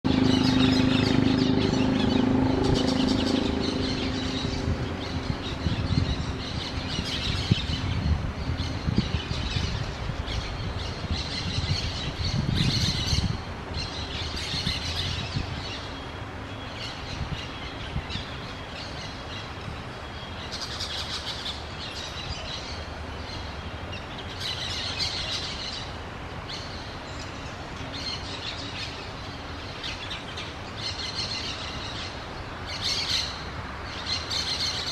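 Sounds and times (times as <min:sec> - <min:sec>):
parakeets chirping: 0:00.1 - 0:07.9
low hum: 0:00.1 - 0:08.3.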